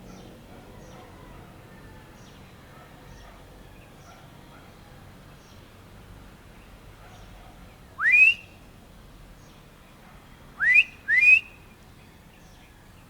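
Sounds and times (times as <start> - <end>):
person whistling rising notes: 8.0 - 8.4, 10.6 - 11.4.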